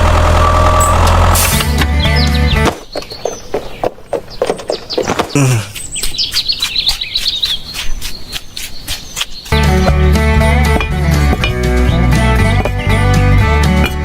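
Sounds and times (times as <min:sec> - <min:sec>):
small birds chirping: 0:01.8 - 0:10.8.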